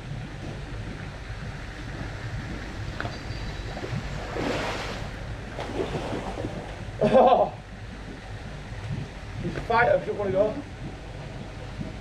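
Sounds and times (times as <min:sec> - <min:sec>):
wind rumbling on microphone: 0:00.0 - 0:12.0.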